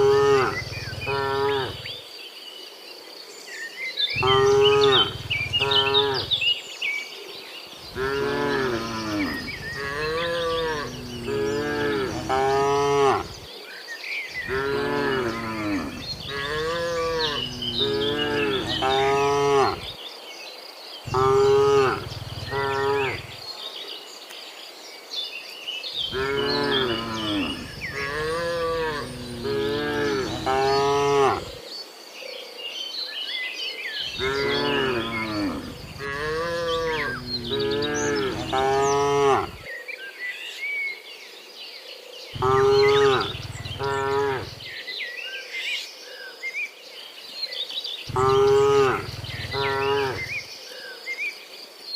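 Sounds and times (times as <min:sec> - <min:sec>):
cattle mooing: 0:00.0 - 0:01.9, 0:04.2 - 0:06.4, 0:07.9 - 0:13.5, 0:14.5 - 0:19.9, 0:21.1 - 0:23.4, 0:26.1 - 0:31.6, 0:34.2 - 0:39.7, 0:42.4 - 0:44.7, 0:48.1 - 0:50.4.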